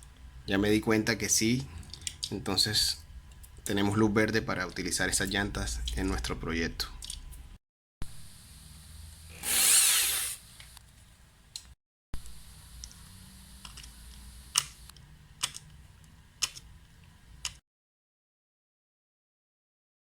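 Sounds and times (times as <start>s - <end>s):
small power drill whining: 9.3s - 10.4s.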